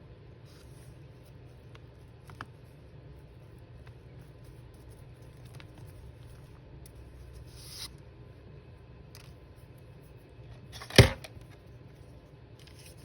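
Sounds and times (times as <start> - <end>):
steady low hum: 0.0 - 13.0
clicks and taps handling paper: 1.6 - 2.6, 3.8 - 7.0
paper rustle: 12.6 - 13.0.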